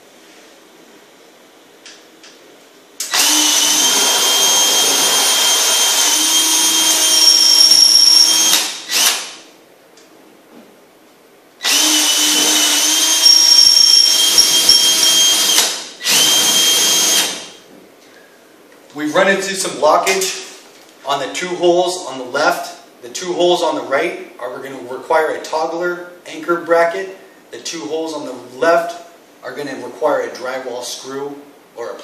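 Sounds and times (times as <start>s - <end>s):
power drill whining: 3.1s - 9.2s, 11.6s - 17.5s.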